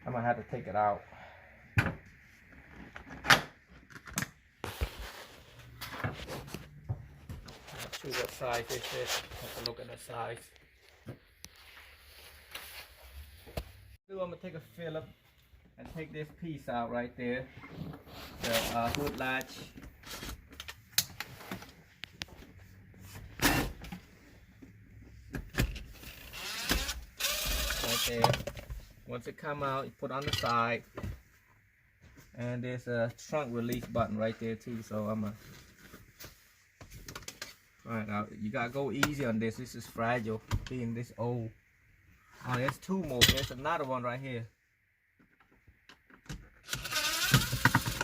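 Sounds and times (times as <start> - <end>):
scraping rustle: 7.4 - 9.9.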